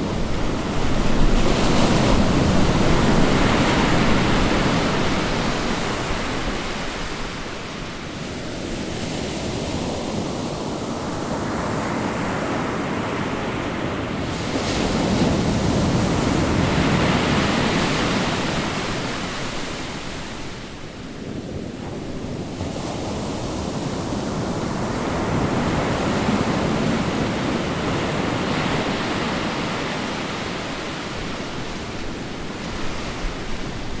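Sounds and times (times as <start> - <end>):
ocean waves breaking: 21.7 - 34.0.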